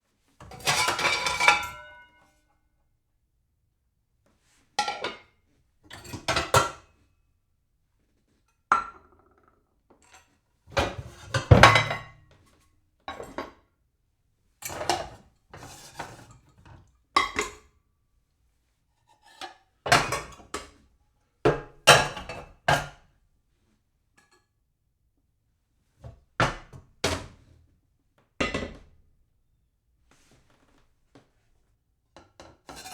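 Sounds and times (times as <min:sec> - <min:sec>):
dishes clattering and clinking: 0:00.4 - 0:02.2, 0:10.0 - 0:12.3, 0:21.5 - 0:23.0.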